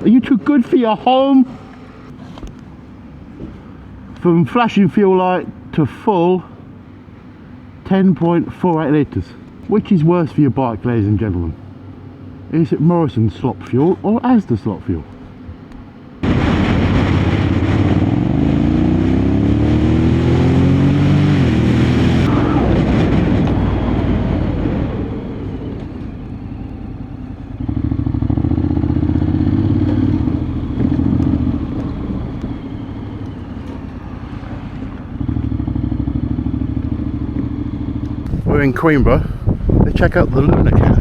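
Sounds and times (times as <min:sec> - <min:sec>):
motorcycle engine accelerating: 0:15.3 - 0:41.0
wind noise: 0:19.6 - 0:28.5, 0:38.2 - 0:41.0.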